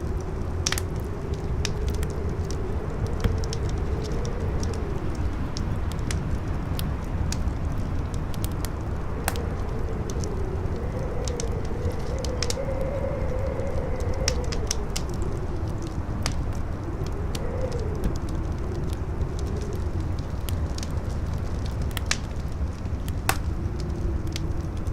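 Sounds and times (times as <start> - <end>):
low rumble: 0.0 - 24.9
wind howling: 0.0 - 24.9
wood fire crackling: 0.0 - 24.9.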